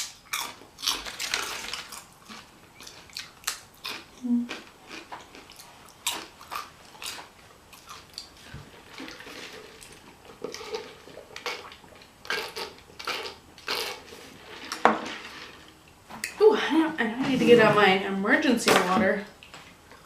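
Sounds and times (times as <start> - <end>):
person chewing food: 0.0 - 14.8.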